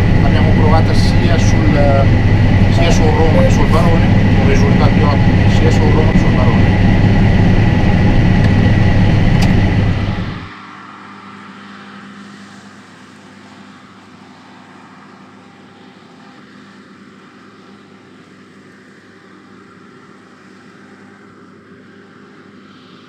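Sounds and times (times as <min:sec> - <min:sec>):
combine harvester engine hum: 0:00.0 - 0:10.5.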